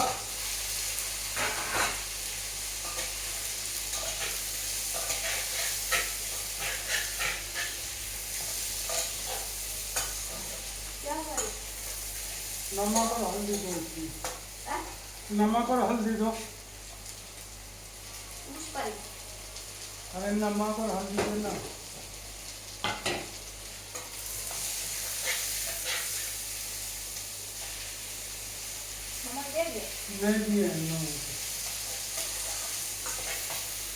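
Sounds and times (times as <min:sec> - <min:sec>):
food sizzling in hot oil: 0:00.0 - 0:33.9
metal spoon scraping pan: 0:03.9 - 0:07.8.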